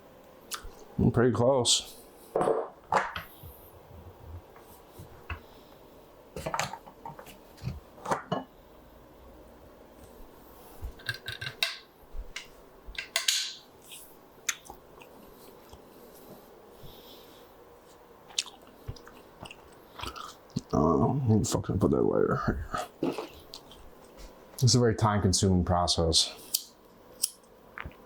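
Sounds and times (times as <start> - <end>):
hand tools clicking and tapping: 11.0 - 11.8, 12.4 - 13.6.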